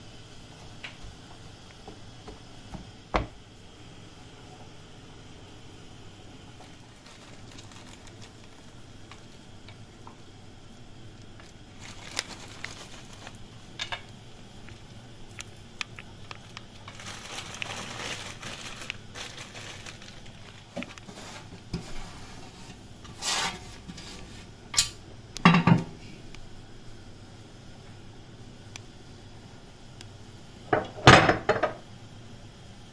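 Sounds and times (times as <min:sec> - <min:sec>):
soft rustling: 0:16.4 - 0:24.5.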